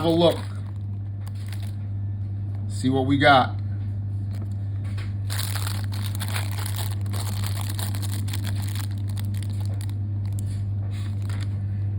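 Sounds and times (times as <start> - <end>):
packaging crinkling: 0.0 - 1.8, 5.2 - 11.6
steady low hum: 0.0 - 11.9.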